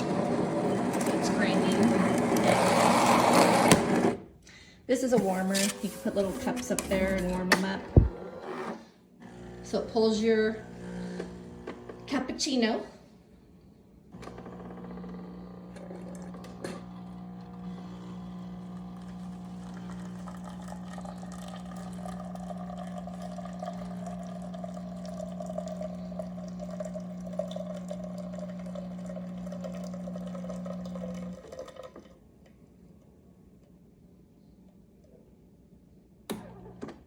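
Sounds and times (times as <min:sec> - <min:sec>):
espresso machine pump humming: 0:00.0 - 0:04.2, 0:09.2 - 0:12.3, 0:14.2 - 0:32.1
liquid pouring into cup: 0:17.4 - 0:32.3.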